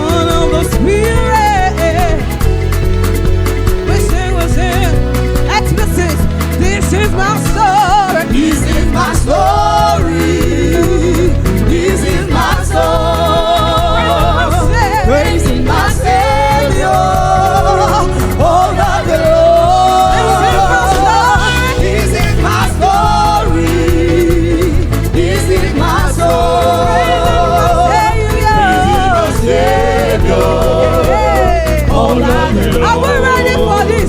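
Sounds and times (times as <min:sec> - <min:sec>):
singer with wide vibrato: 0:00.0 - 0:02.8, 0:03.9 - 0:34.0
full band playing: 0:00.0 - 0:34.0
steady drum beat: 0:00.0 - 0:34.0.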